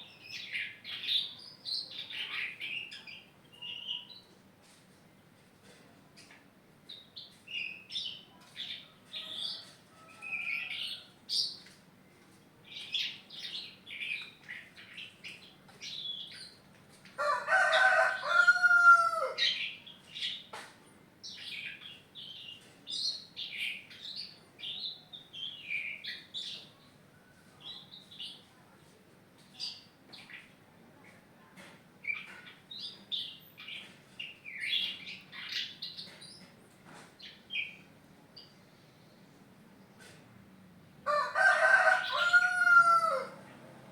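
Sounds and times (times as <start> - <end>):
songbird chirping and singing: 0.0 - 4.4, 6.9 - 11.8, 12.7 - 16.6, 17.2 - 20.6, 21.3 - 28.5, 32.0 - 36.5
lower crowing call: 17.2 - 19.4, 41.1 - 43.5.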